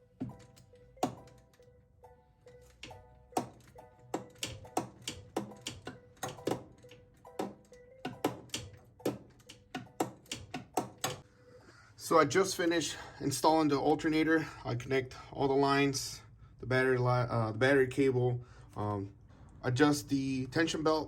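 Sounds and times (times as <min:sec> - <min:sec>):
melodic held notes: 0:00.0 - 0:11.2
clicking beat: 0:00.2 - 0:01.7, 0:02.8 - 0:11.2.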